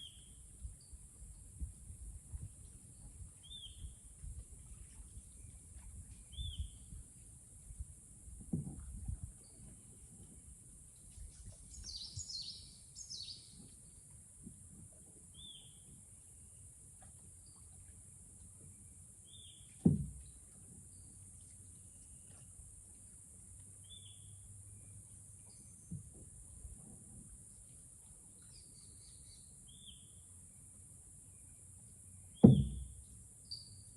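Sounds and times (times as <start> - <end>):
sharp knocks: 19.8 - 20.2, 32.4 - 33.0.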